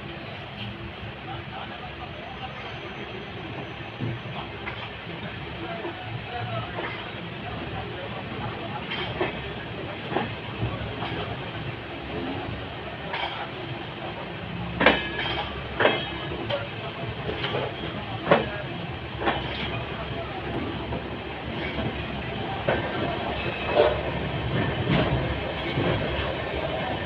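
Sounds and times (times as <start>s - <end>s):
train coach running on track: 0.0s - 27.0s
wheels clacking over rail joints: 14.7s - 27.0s.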